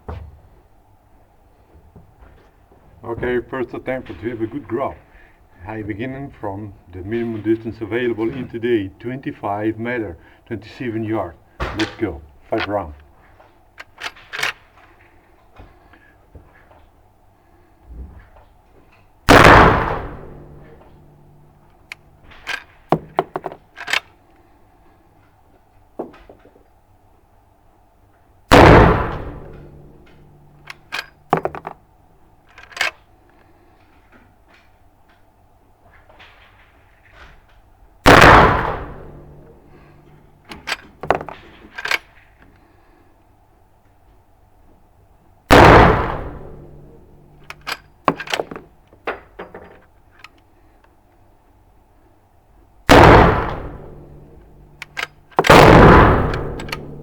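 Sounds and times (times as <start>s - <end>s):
rifle shot: 19.3s - 23.3s, 28.5s - 31.7s, 38.0s - 42.0s, 45.5s - 48.6s, 52.9s - 57.0s
rifle lever metallic clicks: 21.6s - 24.1s, 29.2s - 31.8s, 32.5s - 33.0s, 38.1s - 42.2s, 47.4s - 48.6s, 53.4s - 57.0s.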